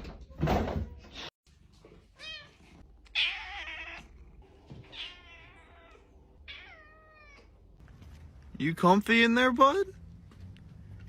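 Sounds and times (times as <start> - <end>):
cat meowing: 2.2 - 4.2, 4.8 - 7.6.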